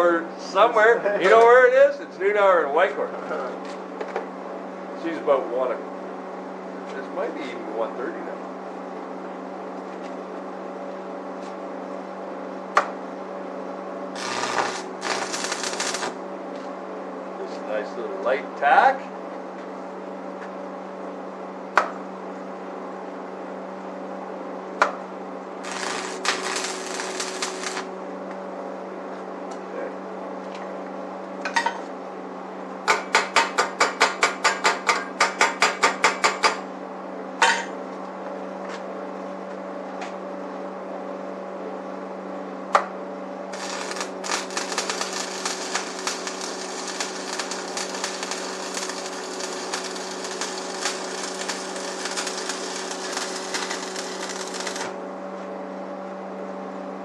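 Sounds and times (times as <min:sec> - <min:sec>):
steady electrical hum: 0:00.0 - 0:57.0
arc welder crackling: 0:14.1 - 0:16.3, 0:25.6 - 0:27.9, 0:43.5 - 0:55.0.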